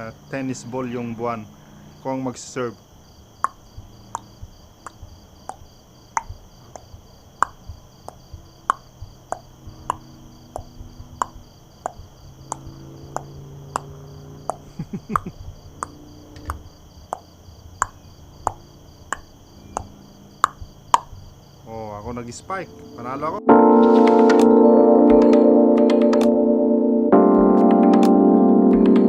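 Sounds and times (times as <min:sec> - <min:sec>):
crickets trilling: 0:00.0 - 0:26.4.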